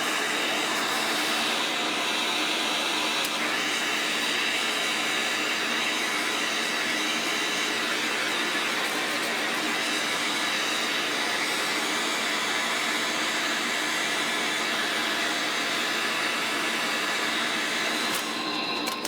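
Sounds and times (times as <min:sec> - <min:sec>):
forge burner rushing: 0:00.0 - 0:14.2.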